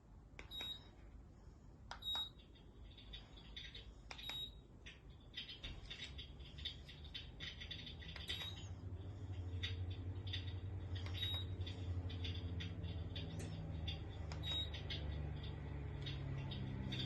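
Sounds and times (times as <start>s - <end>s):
heater fan hum: 0.0s - 17.0s
soft crackling clicks: 0.3s - 1.0s, 1.8s - 17.0s
electronic control beep: 2.0s - 2.4s, 8.1s - 8.7s, 10.3s - 11.6s, 14.4s - 14.8s.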